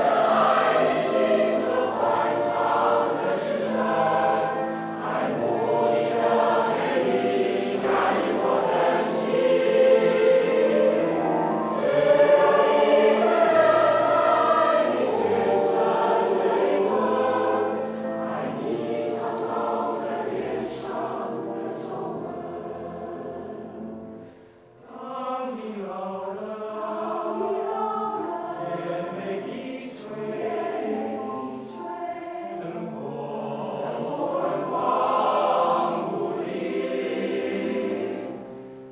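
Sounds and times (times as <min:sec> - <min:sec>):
choir singing in harmony: 0:00.0 - 0:38.9.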